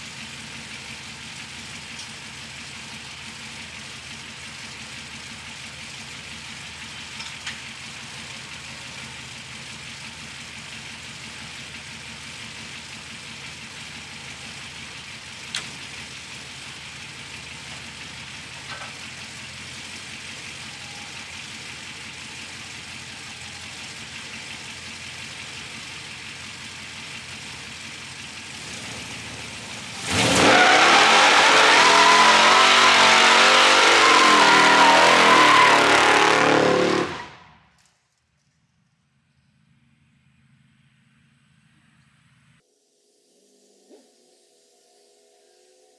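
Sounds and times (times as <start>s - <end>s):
car engine revving: 28.4s - 37.5s.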